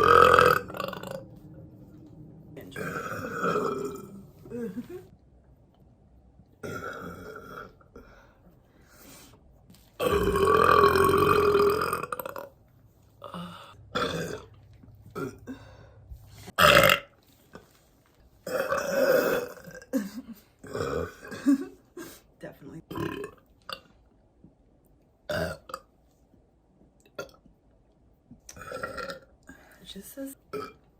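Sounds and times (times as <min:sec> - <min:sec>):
women burping: 0:02.7 - 0:05.1, 0:06.6 - 0:07.8, 0:10.0 - 0:12.4, 0:15.1 - 0:16.0, 0:18.5 - 0:21.7.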